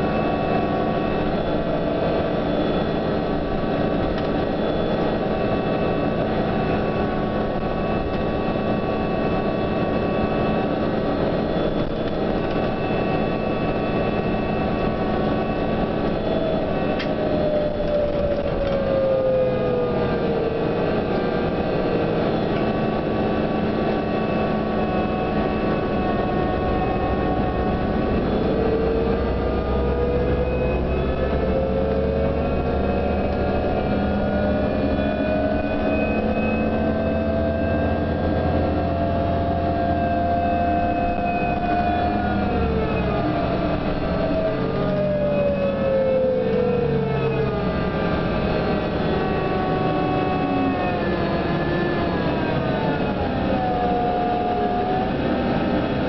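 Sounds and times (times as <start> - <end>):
bus drivetrain drone: 0.0 - 56.0
whining tones: 0.0 - 56.0.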